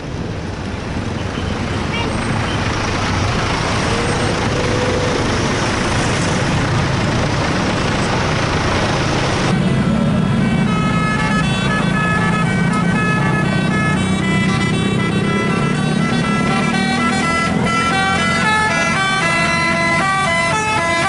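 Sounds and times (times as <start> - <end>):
low engine hum: 0.0 - 21.0
rushing bus and traffic noise: 0.0 - 21.0
bus musical horn tune: 9.6 - 21.0.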